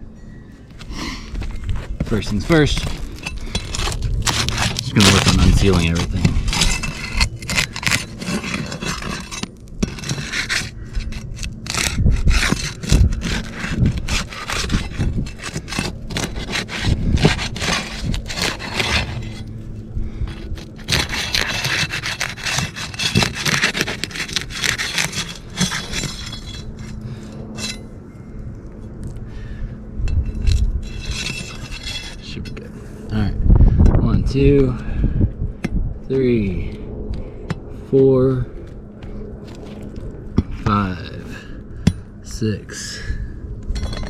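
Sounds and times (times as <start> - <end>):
tool scraping roof shingles: 2.0 - 19.6, 20.2 - 27.8, 30.4 - 32.4
adhesive seal crackling: 3.0 - 5.5.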